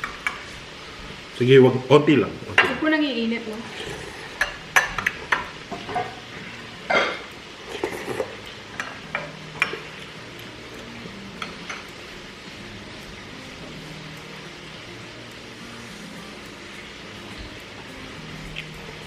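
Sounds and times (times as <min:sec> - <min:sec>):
cutlery clinking against dishes: 0:04.4 - 0:09.9, 0:11.4 - 0:12.0.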